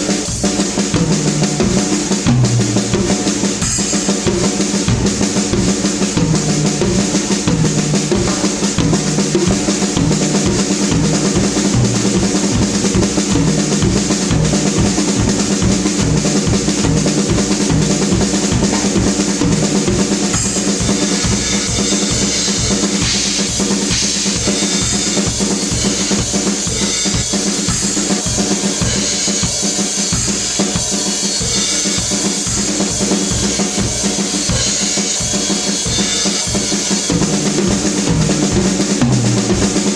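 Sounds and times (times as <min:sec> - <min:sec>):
drum kit playing: 0:00.0 - 0:39.9.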